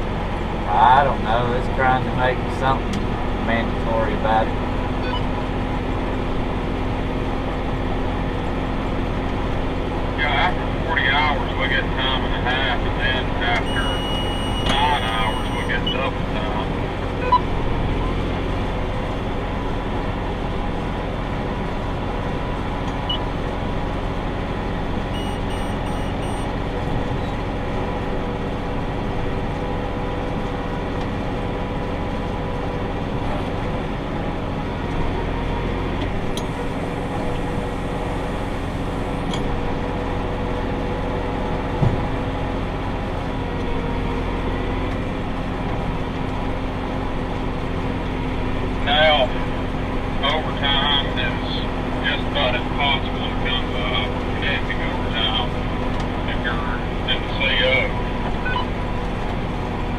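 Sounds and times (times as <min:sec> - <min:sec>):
tractor engine droning: 0:00.0 - 0:59.9
faint electronic beeps: 0:05.0 - 0:05.3, 0:13.5 - 0:16.5, 0:17.2 - 0:17.5, 0:25.2 - 0:26.5, 0:58.3 - 0:58.8.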